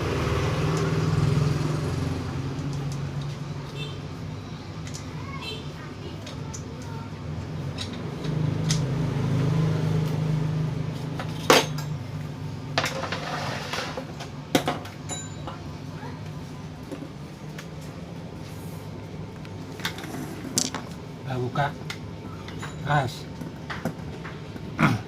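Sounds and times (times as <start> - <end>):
fan parts clicking and scraping: 6.0 - 9.1, 12.7 - 15.6, 19.3 - 21.0.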